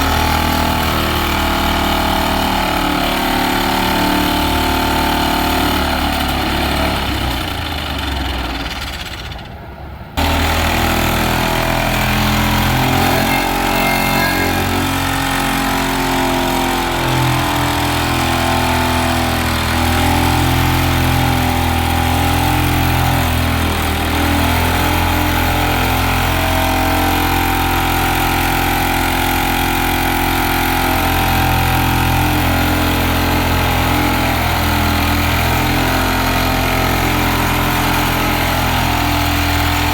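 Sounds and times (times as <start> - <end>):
vibratory pile driver droning: 10.2 - 27.7.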